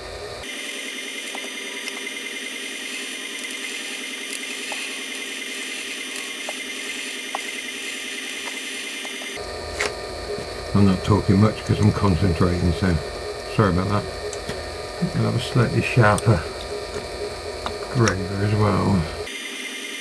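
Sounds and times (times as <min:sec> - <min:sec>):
lathe whirring: 0:00.0 - 0:20.0
faint ticks from cutting tool: 0:08.3 - 0:19.3.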